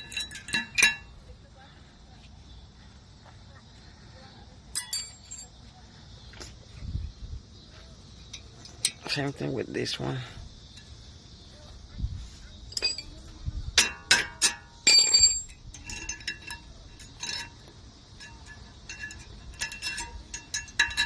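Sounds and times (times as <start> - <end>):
metal clips clinking: 0.0 - 1.0, 4.8 - 5.5, 12.7 - 13.2, 13.8 - 21.0.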